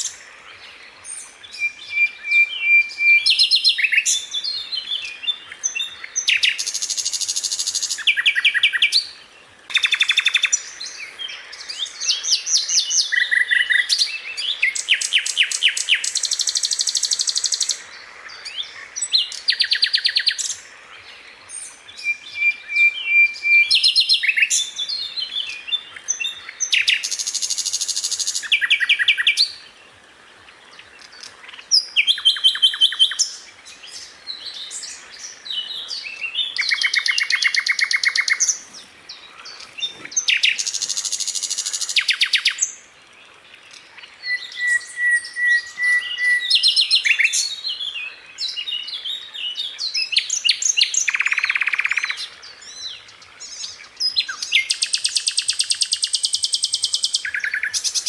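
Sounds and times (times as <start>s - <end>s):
flycatcher singing: 31.1s - 42.8s.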